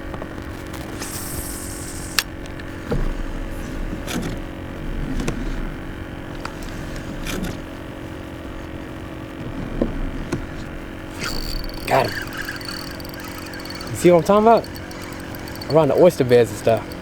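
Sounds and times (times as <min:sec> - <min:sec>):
fishing reel clicks: 0:11.2 - 0:17.0
steady low hum: 0:11.2 - 0:17.0.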